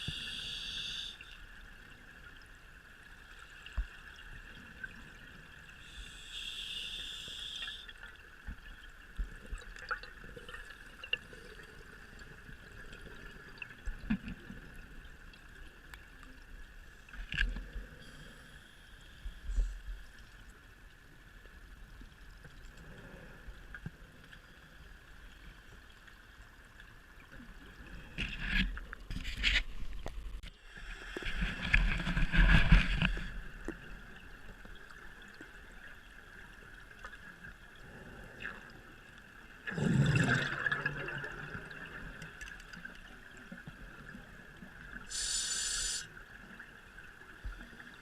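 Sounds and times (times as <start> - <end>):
breath hissing through regulator: 0.0 - 1.2, 5.8 - 7.8, 45.1 - 46.1
bubbles gurgling underwater: 39.6 - 42.4.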